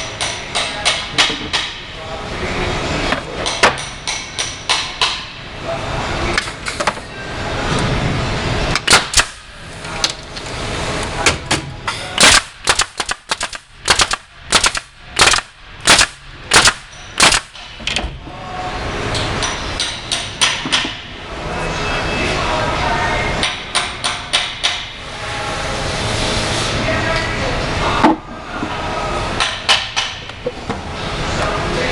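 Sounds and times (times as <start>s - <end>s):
machine driving fasteners: 8.8s - 10.2s, 12.2s - 18.0s
steady machine noise: 12.1s - 19.8s.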